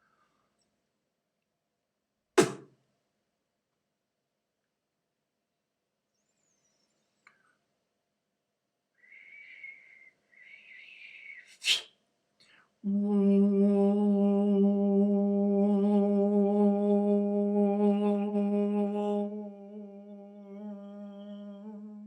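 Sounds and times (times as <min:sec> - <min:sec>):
man whistling high tones: 0:09.0 - 0:11.9
sharp burst of breath: 0:09.0 - 0:11.9
man humming a steady note: 0:12.8 - 0:22.0.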